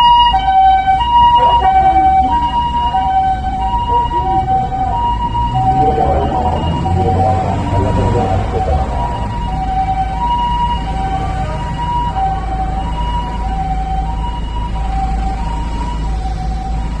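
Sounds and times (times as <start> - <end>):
two-tone ambulance siren: 0.0 - 17.0
vehicle rumble: 0.4 - 12.4.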